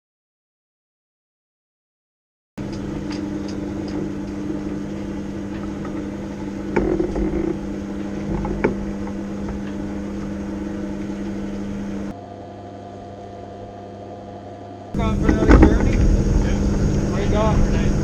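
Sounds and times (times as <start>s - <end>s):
boat engine idling: 2.6s - 12.1s, 15.0s - 18.0s.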